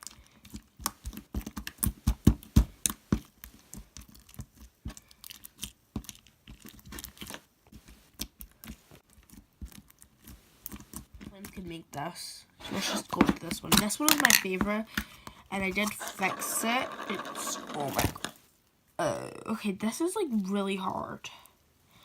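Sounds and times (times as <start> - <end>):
crunchy slime clicking and popping: 3.7 - 7.4.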